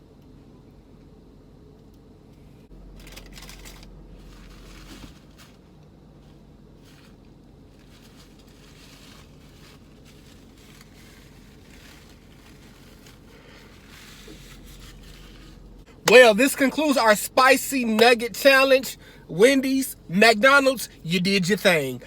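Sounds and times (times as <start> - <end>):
low hum inside car: 0.0 - 22.0
food package crinkling: 3.0 - 5.6, 6.8 - 15.6.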